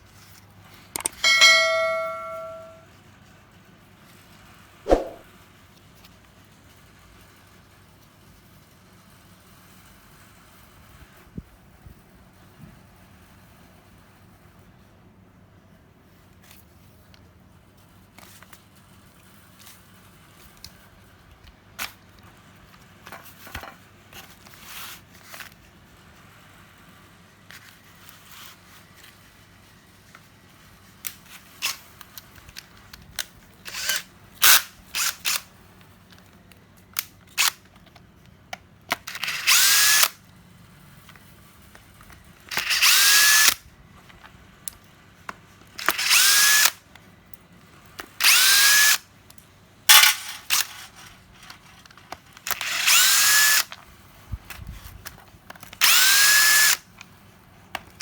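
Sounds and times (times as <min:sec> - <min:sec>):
cordless power tool whine: 0:46.0 - 0:46.7, 0:52.6 - 0:53.7, 0:55.8 - 0:56.8.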